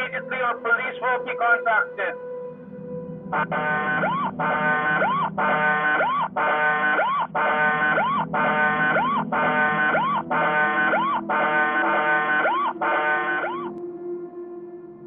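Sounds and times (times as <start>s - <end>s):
security siren with rising whoop: 2.9s - 13.8s.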